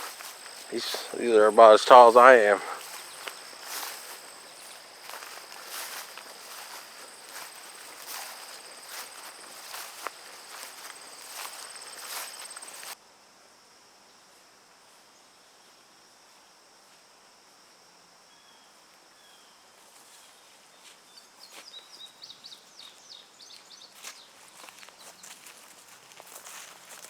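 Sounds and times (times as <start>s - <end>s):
footsteps swishing through weeds: 0.0s - 1.3s, 2.8s - 13.0s
insect trill: 0.0s - 13.0s.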